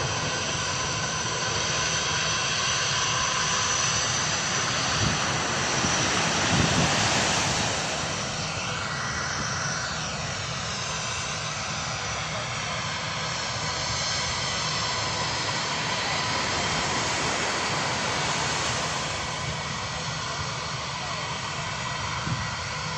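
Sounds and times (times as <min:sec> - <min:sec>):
jet airliner passing overhead: 0:00.0 - 0:22.9.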